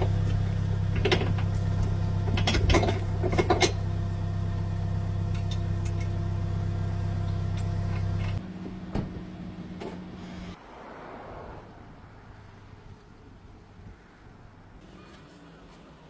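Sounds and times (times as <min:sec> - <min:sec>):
metallic clanks: 0:00.0 - 0:03.9.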